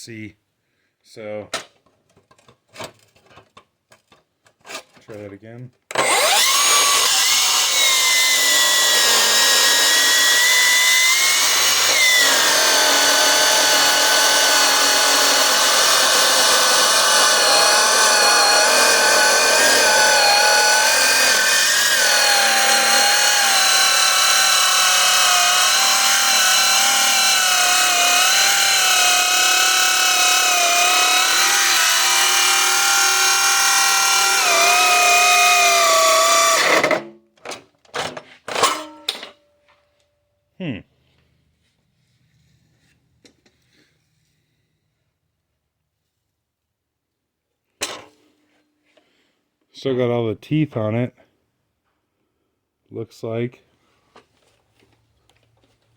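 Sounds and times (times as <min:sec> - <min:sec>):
circular saw cutting steel: 0:06.0 - 0:36.9.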